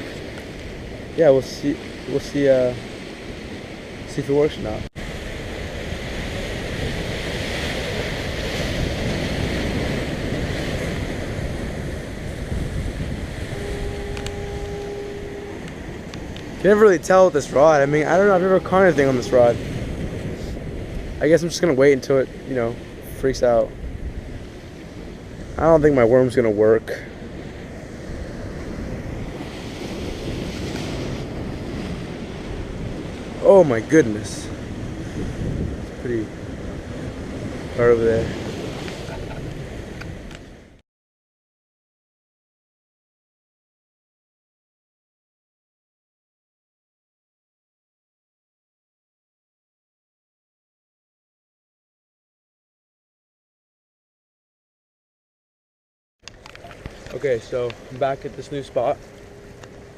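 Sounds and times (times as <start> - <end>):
wind on microphone: 0.0 - 21.6, 27.1 - 40.8
ocean waves breaking: 0.0 - 40.8, 56.2 - 59.9
low hum: 13.0 - 16.8.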